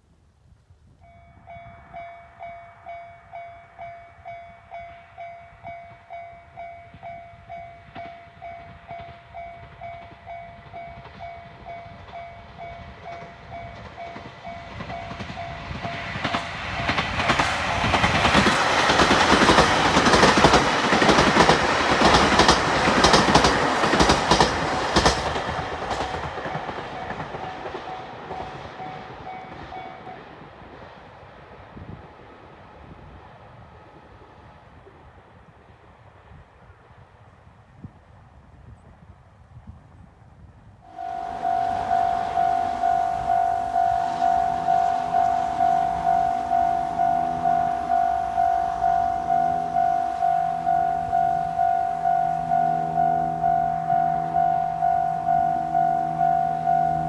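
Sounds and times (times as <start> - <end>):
train wheels clacking over rails: 5.7 - 30.9, 40.9 - 57.0
level crossing alarm clanging: 8.0 - 30.2, 40.9 - 57.0.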